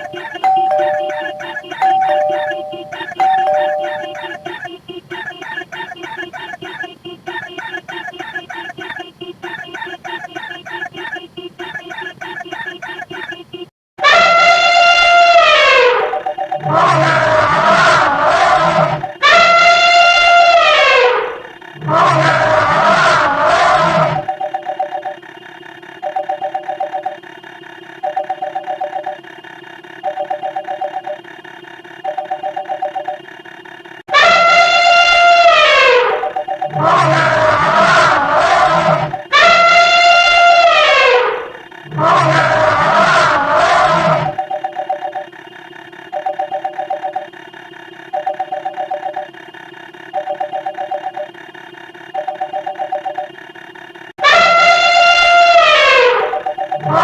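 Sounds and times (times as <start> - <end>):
two-tone telephone ring: 0.0 - 13.4, 15.8 - 16.8, 36.2 - 36.9, 44.3 - 45.3
faint steady hum: 0.0 - 13.7, 14.7 - 57.0
telephone ringing: 0.0 - 13.7, 14.8 - 21.6, 22.2 - 40.9, 41.5 - 51.4, 52.0 - 53.6, 54.2 - 57.0
elephant trumpeting: 0.0 - 28.6, 33.2 - 44.5, 53.3 - 57.0.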